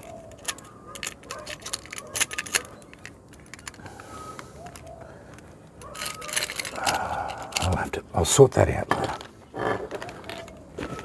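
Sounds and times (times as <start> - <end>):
metal tools clinking and rattling: 0.0 - 3.8, 4.7 - 7.8
rustling: 0.0 - 7.8.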